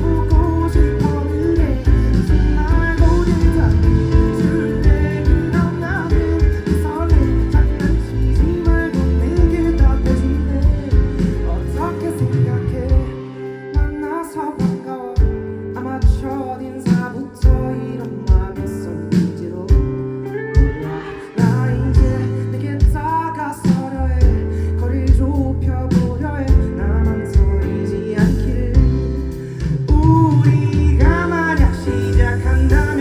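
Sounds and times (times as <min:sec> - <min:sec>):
drum hits: 0:00.0 - 0:14.0, 0:28.8 - 0:33.0
live pop band playing: 0:00.0 - 0:33.0
man singing lead vocal: 0:00.0 - 0:33.0.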